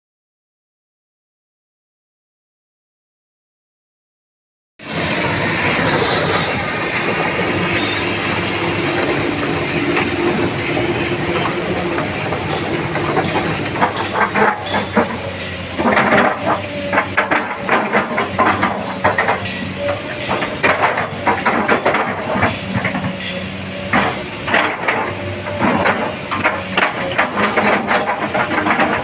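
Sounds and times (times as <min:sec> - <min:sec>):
excavator engine and hydraulics: 0:04.8 - 0:29.0
metallic squeals and clanks: 0:05.8 - 0:24.6.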